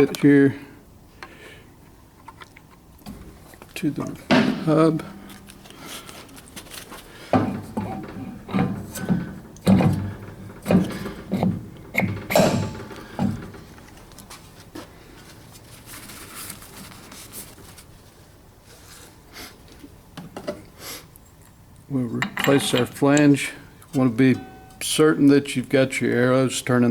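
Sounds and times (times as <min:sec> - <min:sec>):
metal wheel knocking: 0:07.3 - 0:13.8
faint rustle: 0:13.8 - 0:19.3.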